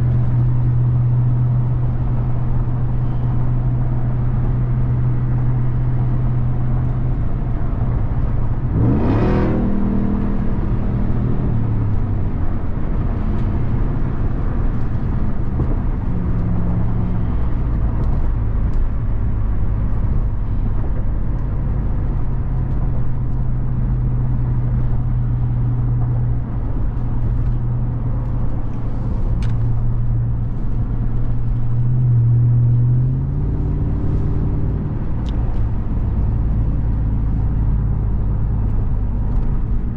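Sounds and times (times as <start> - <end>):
pickup truck engine revving: 8.7 - 12.1.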